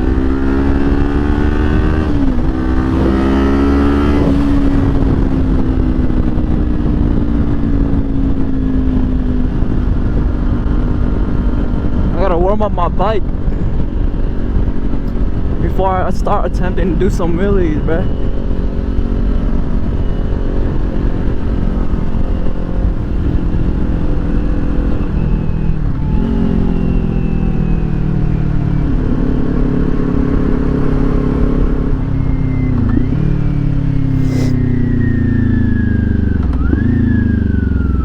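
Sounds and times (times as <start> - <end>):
motorcycle engine running: 0.0 - 27.2.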